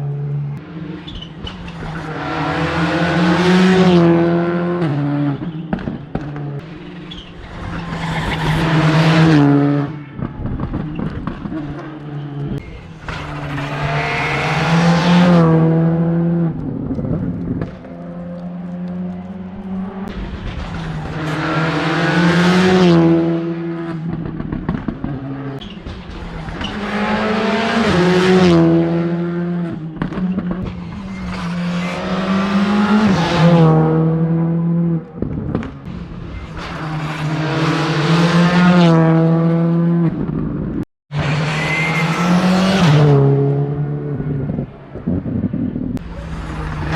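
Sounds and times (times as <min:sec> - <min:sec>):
rally cars passing at speed: 0:00.0 - 0:46.9.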